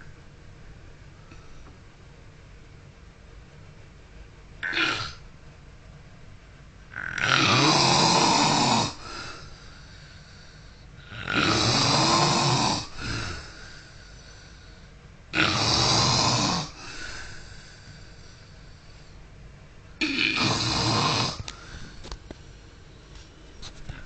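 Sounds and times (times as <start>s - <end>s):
man snoring: 4.6s - 5.2s, 7.0s - 9.6s, 11.0s - 14.0s, 15.3s - 17.6s, 20.0s - 21.9s
soft breath: 9.0s - 11.0s, 12.9s - 15.0s, 16.8s - 19.4s, 21.4s - 24.0s.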